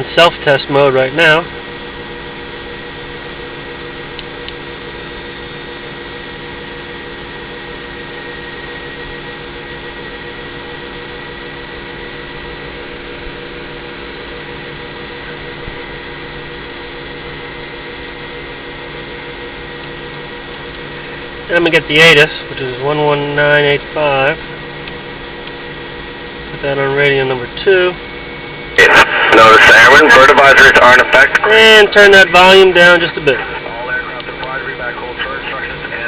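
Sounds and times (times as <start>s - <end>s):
airplane engine idling: 0.0s - 36.0s.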